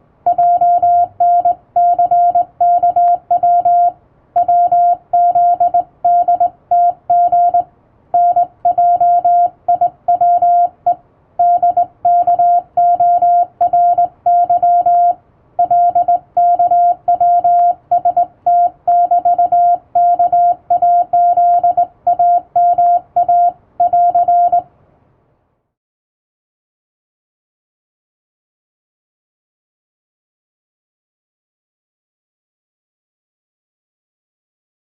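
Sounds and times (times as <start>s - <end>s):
morse code beeps: 0.3s - 7.6s, 8.2s - 24.7s.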